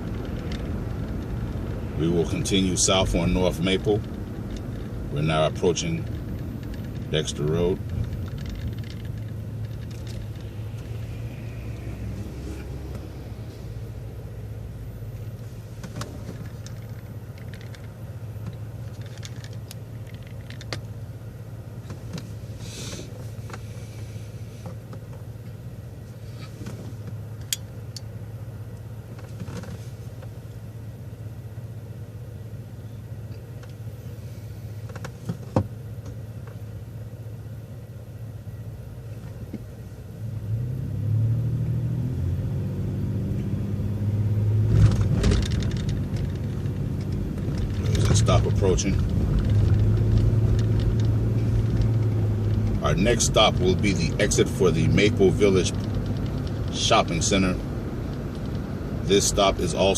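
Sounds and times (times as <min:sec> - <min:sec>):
rattles and clicks: 0:00.0 - 0:14.0, 0:15.4 - 0:21.0, 0:44.6 - 0:59.9
bus engine running: 0:00.0 - 0:59.9.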